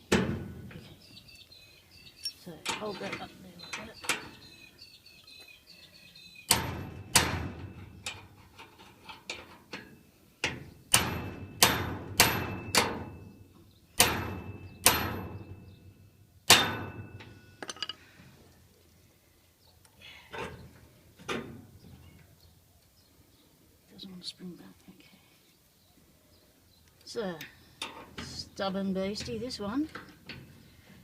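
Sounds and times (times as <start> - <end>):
padlock struck with metallic knocks: 10.9 - 13.2, 14.0 - 15.5, 16.5 - 17.9.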